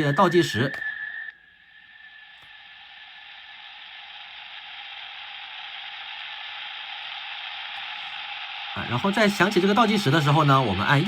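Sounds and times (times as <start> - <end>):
faint held tone: 0.0 - 5.4.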